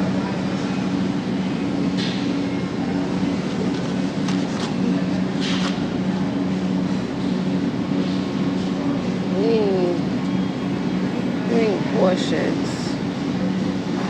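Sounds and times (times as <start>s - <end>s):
refrigeration and ventilation hum: 0.0s - 14.0s.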